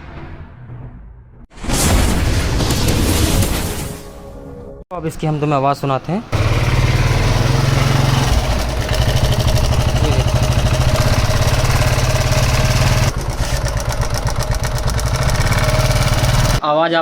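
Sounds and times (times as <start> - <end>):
moped engine rattling: 6.4 - 16.6.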